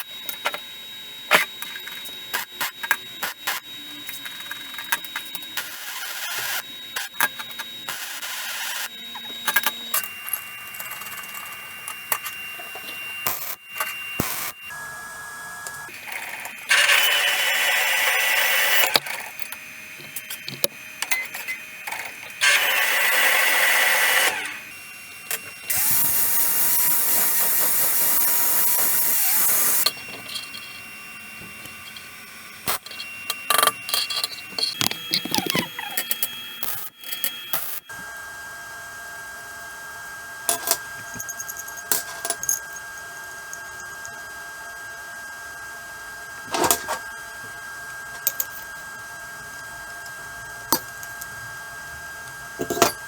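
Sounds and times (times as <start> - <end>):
power tool motor whine: 0.0 - 53.0
clicks and knocks of parts: 32.7 - 37.8.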